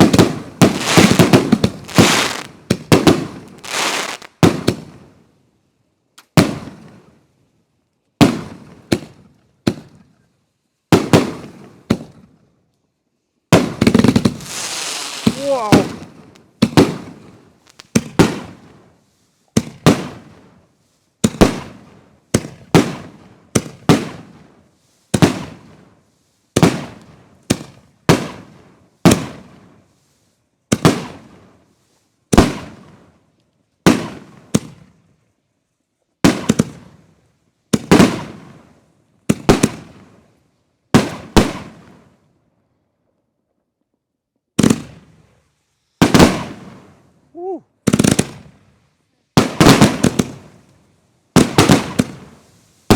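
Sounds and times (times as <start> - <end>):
firework shells booming: 0.0 - 4.8, 13.6 - 18.4.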